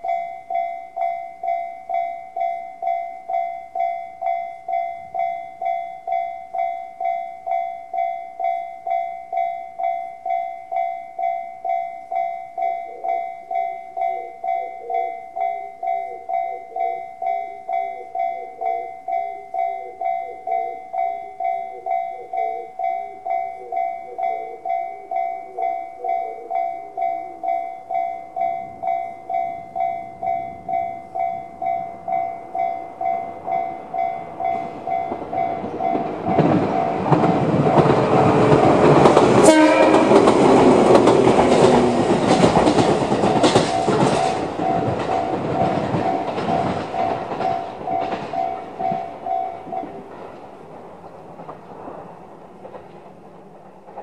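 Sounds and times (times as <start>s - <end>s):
level-crossing electronic bell: 0.0s - 38.2s, 39.4s - 50.1s
train wheels clacking over rail joints: 29.3s - 54.0s.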